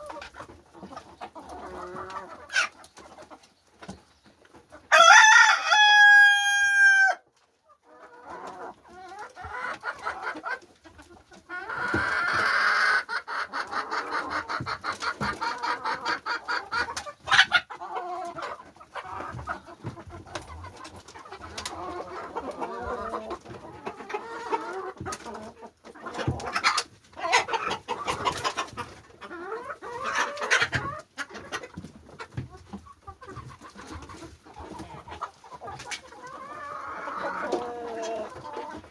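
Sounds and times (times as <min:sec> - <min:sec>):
chickens clucking: 0:00.0 - 0:38.9
rooster crowing: 0:04.9 - 0:07.2.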